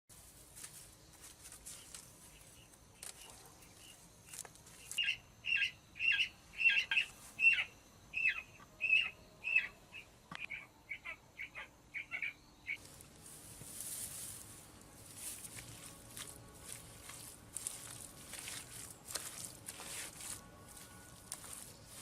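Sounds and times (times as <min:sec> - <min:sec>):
bird chirping: 0:01.8 - 0:12.9.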